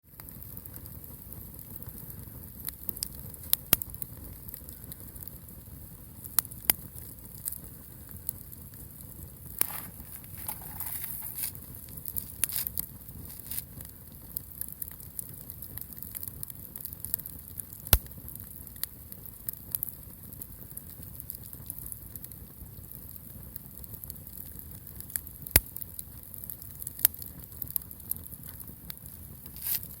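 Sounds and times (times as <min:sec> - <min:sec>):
bonfire crackling and popping: 0:00.0 - 0:30.0
fire hiss: 0:09.4 - 0:14.0, 0:28.9 - 0:30.0.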